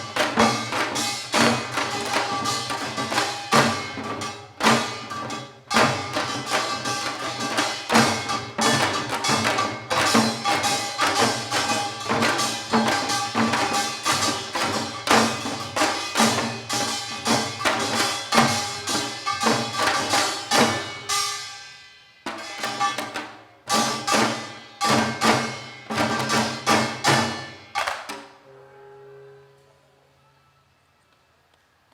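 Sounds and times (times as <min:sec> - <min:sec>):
hourglass drum strokes: 0:00.0 - 0:21.4.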